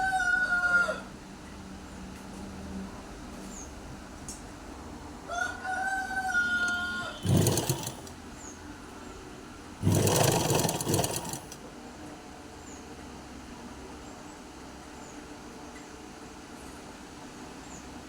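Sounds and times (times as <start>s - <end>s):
rooster crowing: 0.0s - 1.1s, 5.3s - 7.3s
sewing machine stitching: 6.7s - 8.2s, 9.8s - 11.6s.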